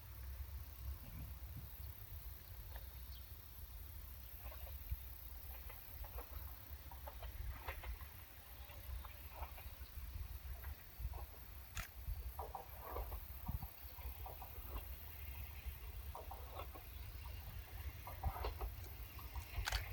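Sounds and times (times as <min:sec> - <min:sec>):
low uneven rumble: 0:04.2 - 0:19.9
sharp click: 0:19.6 - 0:19.9.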